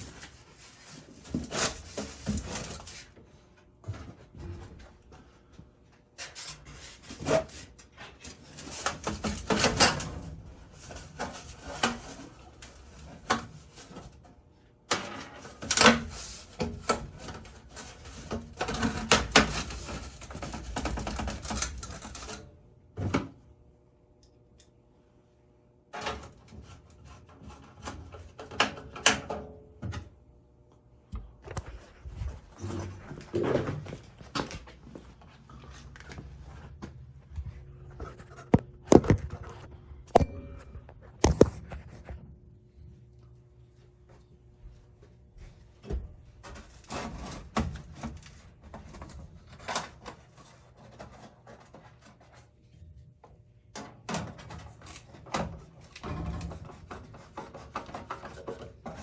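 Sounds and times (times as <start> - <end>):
metal flue pipe clanking: 40.0 - 41.8.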